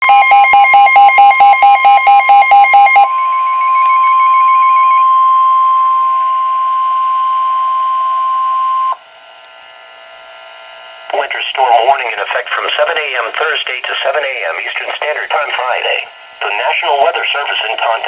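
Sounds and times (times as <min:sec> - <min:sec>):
rapid pulsing alarm beeps: 0:00.0 - 0:09.0
steady high alarm tone: 0:00.0 - 0:11.9.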